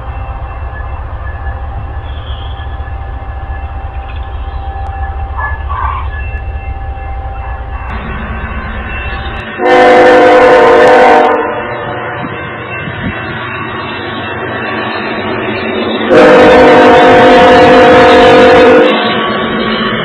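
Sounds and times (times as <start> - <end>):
train rumbling: 0.0 - 20.0
locomotive horn blast: 5.4 - 6.2, 9.3 - 12.3, 16.1 - 19.1.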